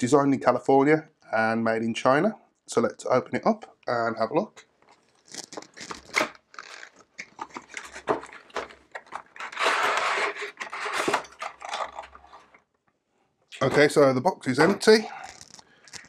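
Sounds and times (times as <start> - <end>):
cardboard scraping rustle: 7.4 - 12.6.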